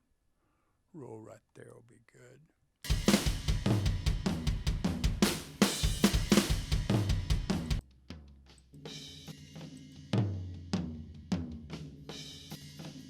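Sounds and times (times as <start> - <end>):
acoustic drum kit tom roll: 2.9 - 7.8
ringing drums and cymbal wash: 2.9 - 7.8, 8.8 - 13.0.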